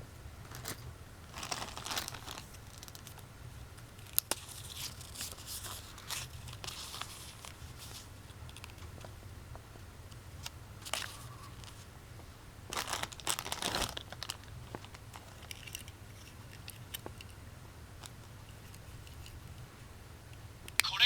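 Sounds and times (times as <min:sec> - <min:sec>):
plastic crinkling and rustling: 0:00.4 - 0:03.3, 0:03.9 - 0:09.1, 0:10.4 - 0:11.9, 0:12.7 - 0:17.2.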